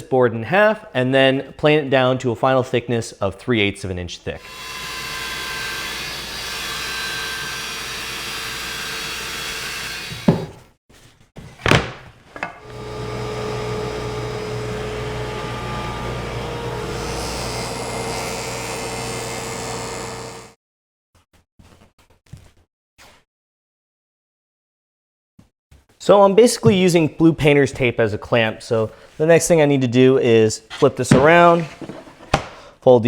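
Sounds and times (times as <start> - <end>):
woodworking machine running: 4.4 - 10.3, 12.6 - 20.6
power saw ripping wood: 12.6 - 20.6.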